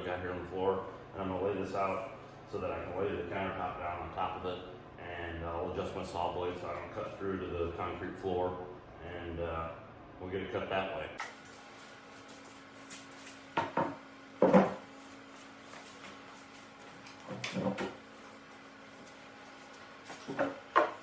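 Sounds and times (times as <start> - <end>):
wooden boards knocking on concrete: 13.6 - 14.8, 20.2 - 21.0.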